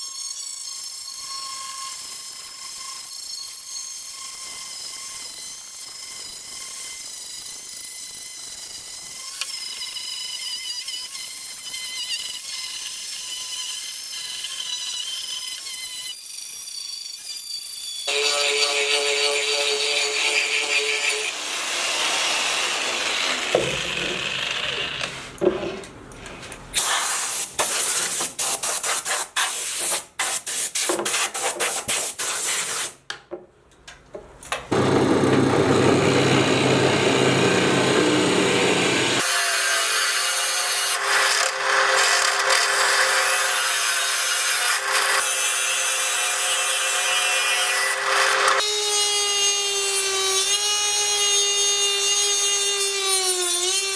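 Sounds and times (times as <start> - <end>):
power tool running against wood: 34.7 - 39.4.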